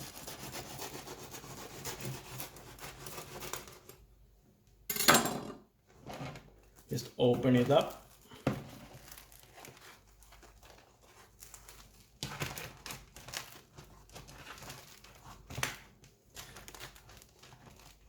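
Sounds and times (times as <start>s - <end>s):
crusty bread crackling and crunching: 6.1s - 18.0s.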